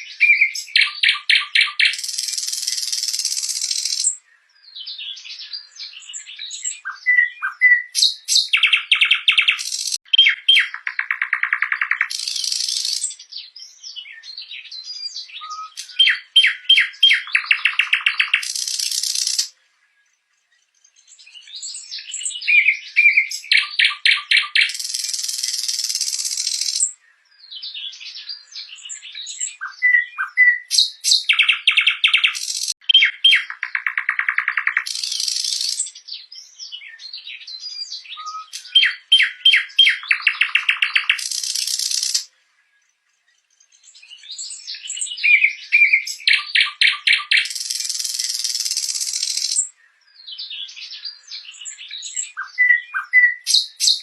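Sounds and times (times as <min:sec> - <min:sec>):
nightingale singing: 0:00.0 - 0:54.0.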